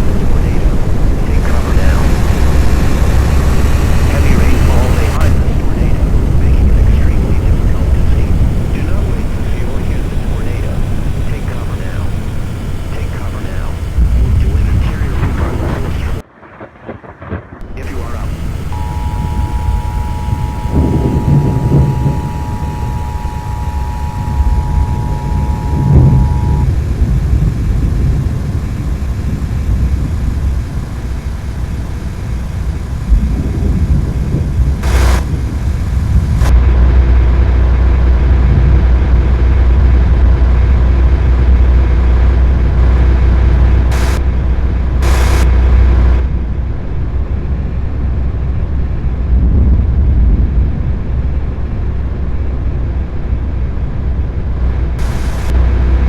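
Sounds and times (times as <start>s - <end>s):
vehicle rumbling on road: 0.0s - 16.2s, 17.6s - 50.5s
two-tone alert signal: 17.9s - 26.7s.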